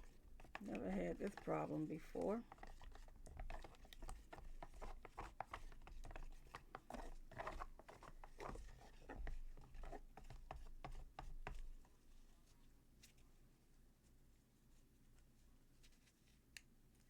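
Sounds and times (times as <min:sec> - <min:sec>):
scratchy strokes: 0:00.0 - 0:11.7
stick stirring plaster in container: 0:00.0 - 0:12.6.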